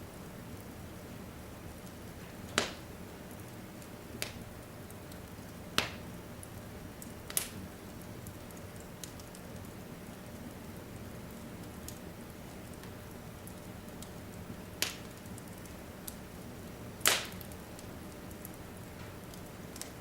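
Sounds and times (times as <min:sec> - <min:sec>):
log fire crackling: 0:00.0 - 0:20.0
sharp pops of fire: 0:01.7 - 0:09.8, 0:14.7 - 0:16.2, 0:17.0 - 0:20.0.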